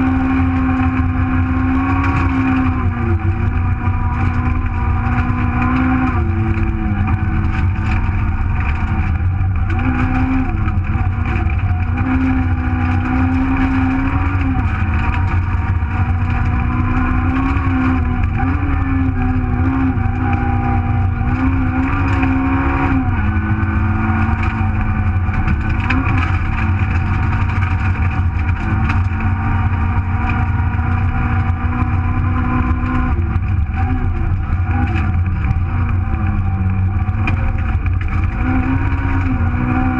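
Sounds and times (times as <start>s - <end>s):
car engine revving in cabin: 0.0s - 39.9s.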